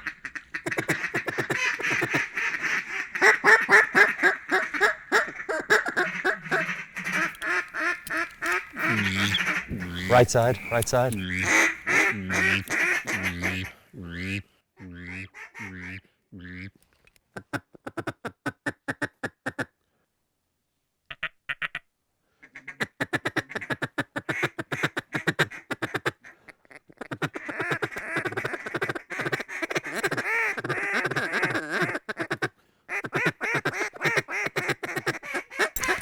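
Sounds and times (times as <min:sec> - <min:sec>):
duck calls quacking: 0:00.0 - 0:16.7.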